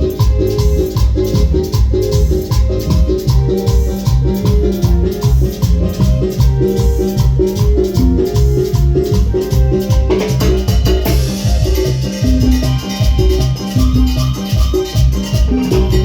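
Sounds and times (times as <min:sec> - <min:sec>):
live band playing latin dance music: 0:00.0 - 0:16.0.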